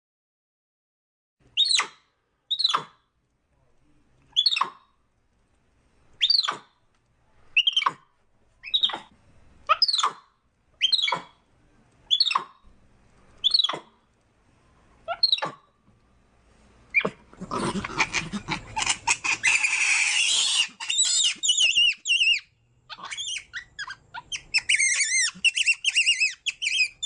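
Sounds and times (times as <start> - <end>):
monkey high-pitched calls: 1.6 - 3.0, 4.4 - 4.8, 6.2 - 6.8, 7.6 - 8.0, 8.6 - 9.1, 9.7 - 11.4, 12.1 - 12.6, 13.4 - 14.0, 15.1 - 15.7, 16.9 - 27.0.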